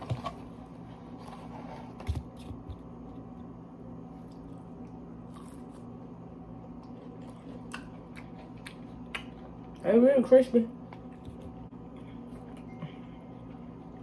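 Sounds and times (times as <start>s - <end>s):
chewing crunches: 4.2s - 6.0s, 6.6s - 9.8s.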